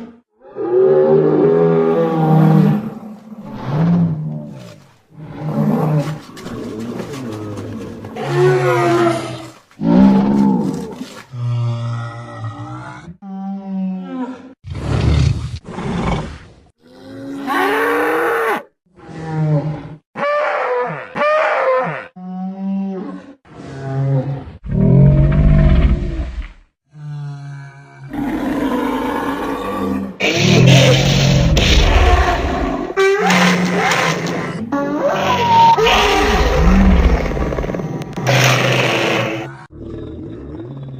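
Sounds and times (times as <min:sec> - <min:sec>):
creature roars and grunts: 0:08.1 - 0:40.9
rough creature calls: 0:28.1 - 0:39.8.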